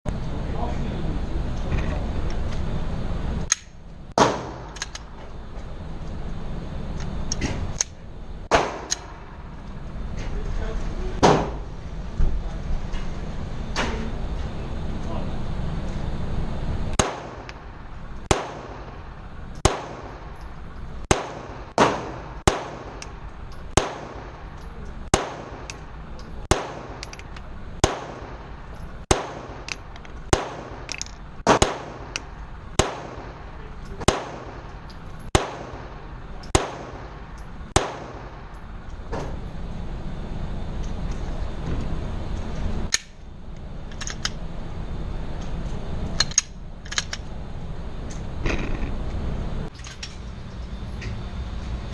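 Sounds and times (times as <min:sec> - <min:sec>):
steady low rumble: 0:00.1 - 0:51.9
pistol shots: 0:04.2 - 0:04.9, 0:08.5 - 0:09.2, 0:16.9 - 0:19.0, 0:19.6 - 0:20.4, 0:21.0 - 0:23.1, 0:23.7 - 0:24.5, 0:25.1 - 0:27.2, 0:27.8 - 0:28.4, 0:29.1 - 0:38.5.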